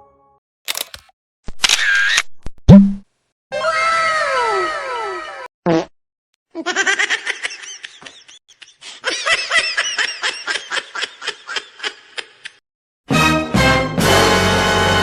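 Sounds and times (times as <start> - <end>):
high-pitched laughter: 6.6 - 12.6.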